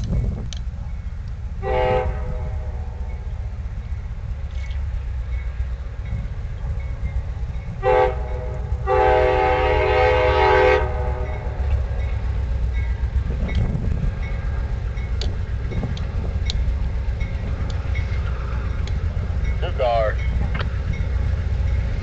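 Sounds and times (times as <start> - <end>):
steady low rumble: 0.0 - 22.0
chord horn blasts: 1.6 - 2.9, 7.8 - 11.7.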